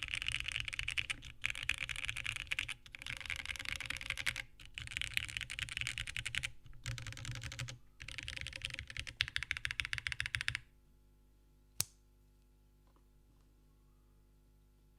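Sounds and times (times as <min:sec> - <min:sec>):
fast typing on mechanical keyboard: 0:00.0 - 0:10.6.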